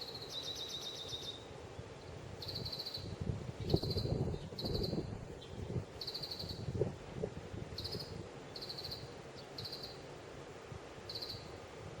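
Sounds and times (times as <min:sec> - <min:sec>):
wind rumble on microphone: 0:01.7 - 0:09.7, 0:10.4 - 0:12.0.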